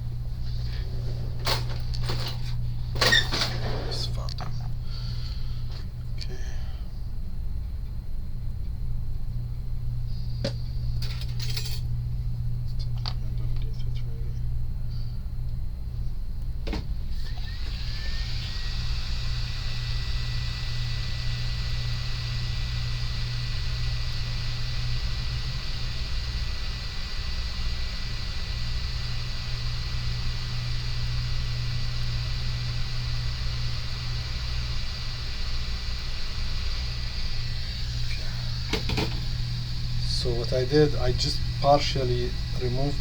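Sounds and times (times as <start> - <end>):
hot air station hissing: 0.0 - 7.0, 17.0 - 43.0.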